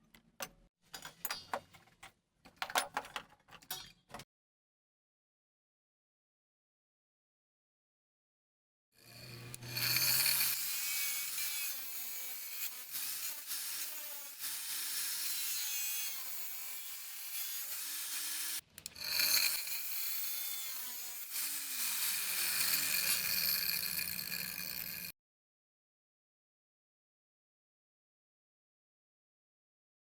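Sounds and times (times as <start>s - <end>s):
angle grinder cutting wood: 9.0s - 25.1s.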